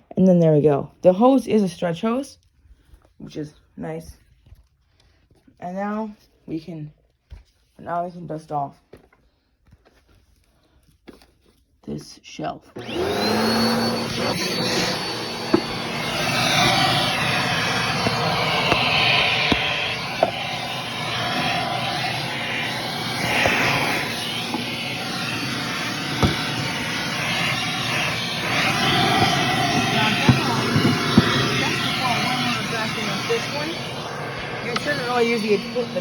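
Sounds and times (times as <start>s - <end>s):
vacuum cleaner running: 12.8s - 36.0s
sharp taps: 18.0s - 20.4s, 26.2s - 26.6s.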